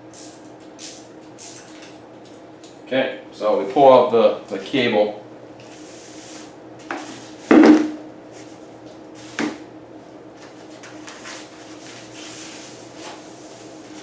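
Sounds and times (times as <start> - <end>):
tools and bicycle parts handled: 0.1 - 2.8, 10.4 - 14.0.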